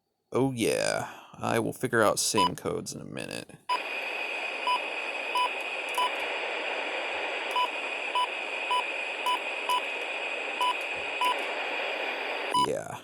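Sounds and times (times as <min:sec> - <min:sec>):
radio beeping: 0:02.4 - 0:02.6, 0:03.7 - 0:12.9
radio static hiss: 0:03.7 - 0:13.0.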